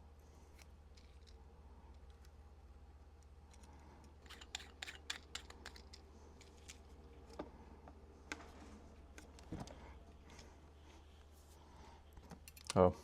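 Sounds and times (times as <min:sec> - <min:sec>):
low steady hum: 0:00.0 - 0:13.0
clicks of small parts handled: 0:00.5 - 0:02.4, 0:03.2 - 0:07.5, 0:12.2 - 0:12.8.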